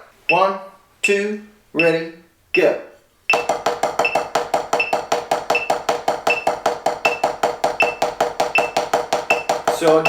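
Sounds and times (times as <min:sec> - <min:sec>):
drumsticks on rubber practice pad: 0:03.3 - 0:10.0.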